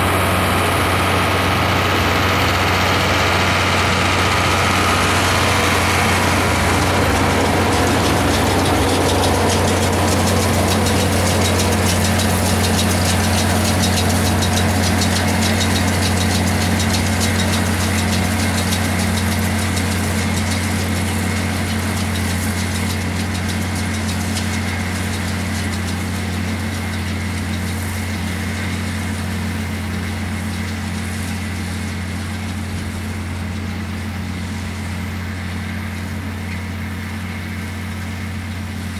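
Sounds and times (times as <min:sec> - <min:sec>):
tractor diesel engine humming: 0:00.0 - 0:38.9.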